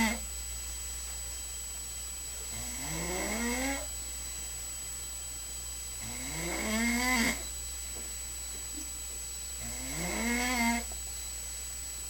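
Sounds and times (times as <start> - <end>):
steady low hum: 0.0 - 12.0
person snoring: 9.6 - 10.9.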